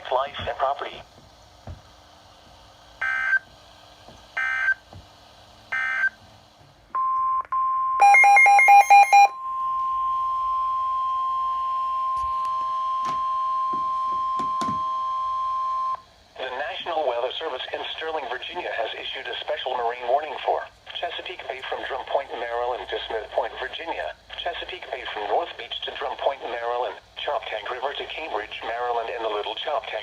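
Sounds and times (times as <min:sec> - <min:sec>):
rapid two-tone beeps: 0:07.0 - 0:16.0
digital data tones: 0:08.0 - 0:15.4.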